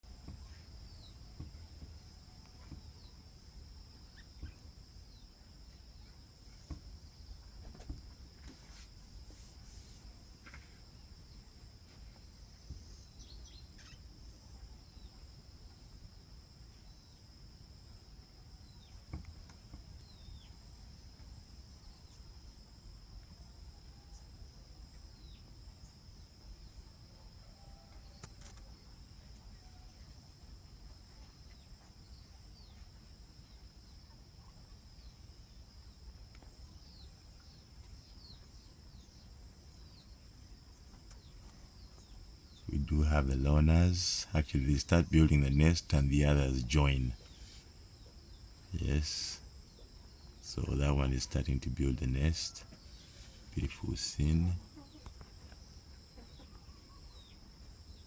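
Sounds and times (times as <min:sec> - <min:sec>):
insect trill: 0:00.0 - 0:58.0
bird chirps: 0:12.6 - 0:14.1.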